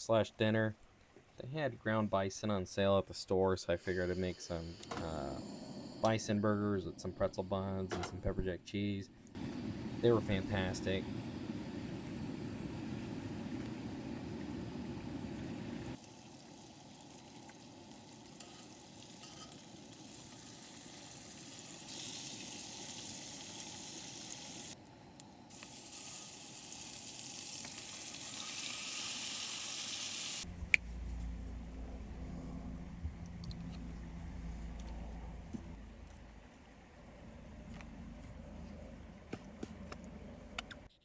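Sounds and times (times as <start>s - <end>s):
burgers sizzling in a pan: 16.0s - 24.8s, 25.7s - 30.4s
low rumbling noise: 30.4s - 36.4s.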